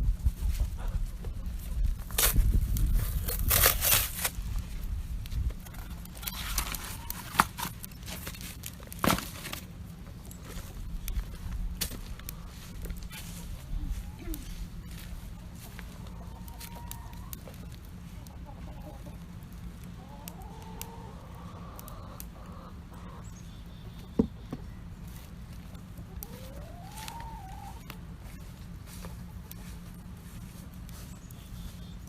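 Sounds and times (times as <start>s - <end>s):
campfire crackling: 4.3s - 18.4s, 19.2s - 22.9s, 24.7s - 32.0s
chickens calling: 5.3s - 32.0s.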